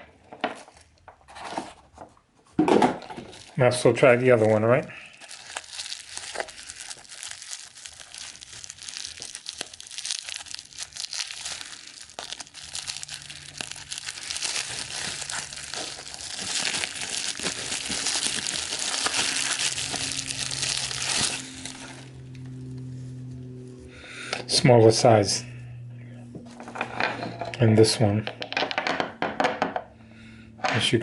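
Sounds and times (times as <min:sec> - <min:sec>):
plastic packaging crinkling: 0:03.0 - 0:23.8.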